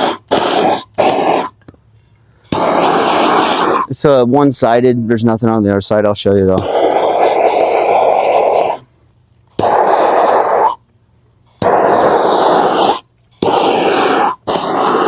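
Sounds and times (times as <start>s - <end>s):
blowtorch flame rushing: 0.0s - 1.6s, 2.5s - 3.9s, 6.6s - 8.9s, 9.5s - 10.8s, 11.5s - 15.0s
blowtorch ignition click: 0.0s - 1.6s, 2.5s - 3.8s, 9.5s - 10.8s, 11.5s - 15.0s.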